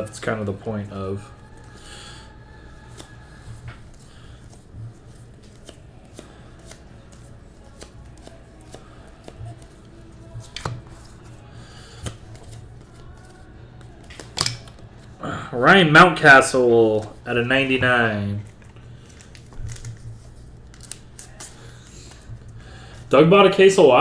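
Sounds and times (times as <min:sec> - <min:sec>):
steady low hum: 0:00.0 - 0:24.0
trading cards flipped and snapped: 0:05.3 - 0:09.7, 0:10.4 - 0:11.0, 0:13.8 - 0:14.9, 0:18.5 - 0:22.2.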